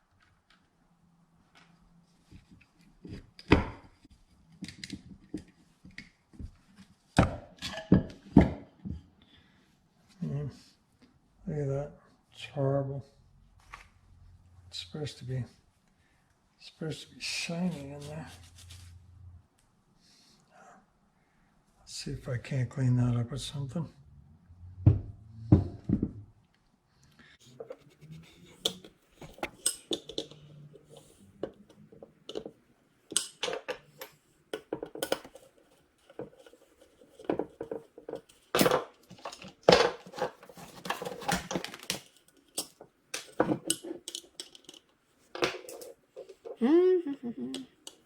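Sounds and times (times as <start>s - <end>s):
metal parts clinking: 38.1s - 46.4s.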